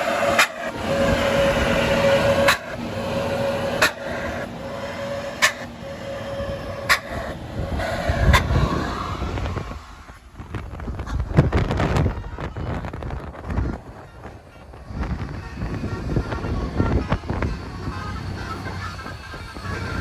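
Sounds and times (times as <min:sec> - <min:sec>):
steady tone: 0:00.0 - 0:10.8
heavy vehicle engine drone: 0:00.0 - 0:20.0.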